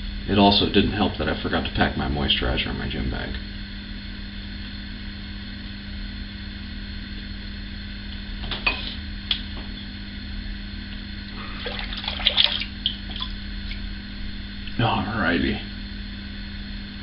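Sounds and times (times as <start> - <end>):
water running into a sink: 11.5 - 13.3.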